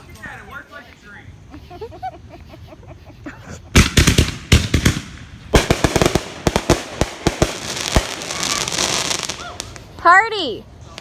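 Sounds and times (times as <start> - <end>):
fireworks bangs and crackling: 3.7 - 11.0.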